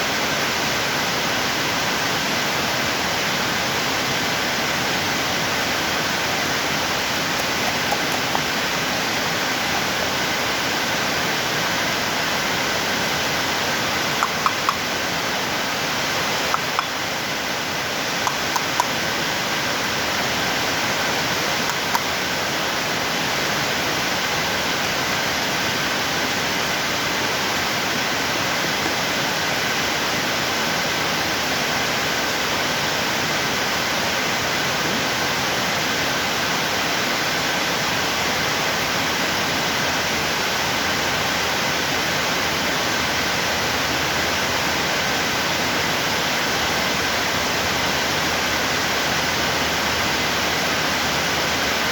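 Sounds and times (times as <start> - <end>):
coffee maker rushing noise: 6.3 - 10.8.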